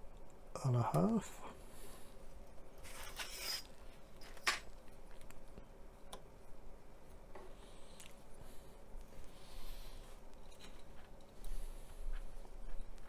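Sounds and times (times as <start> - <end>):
rasping scrape: 2.8 - 3.8.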